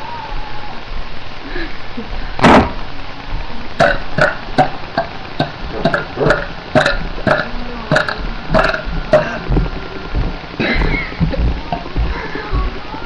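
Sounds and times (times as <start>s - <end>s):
girl burping: 3.8s - 4.4s, 5.4s - 9.4s.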